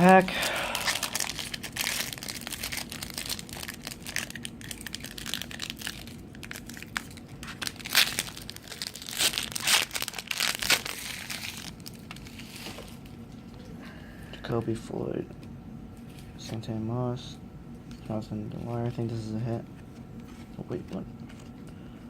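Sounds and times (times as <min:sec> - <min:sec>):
sharp wrapper crackles: 0:00.0 - 0:13.0
wrapper crinkling and tearing: 0:00.0 - 0:13.0.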